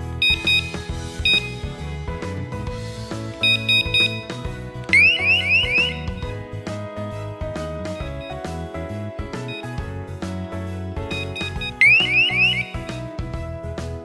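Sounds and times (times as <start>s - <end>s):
high two-tone alarm beeps: 0.0s - 1.7s, 3.4s - 6.4s, 8.0s - 8.4s, 9.5s - 9.8s, 11.1s - 13.0s
background music: 0.0s - 14.0s.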